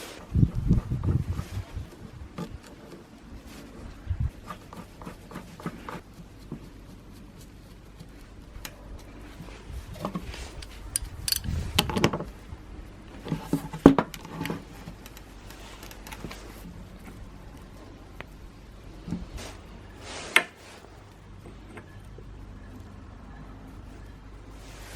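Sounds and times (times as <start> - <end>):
tools and small parts handled: 10.0 - 12.2.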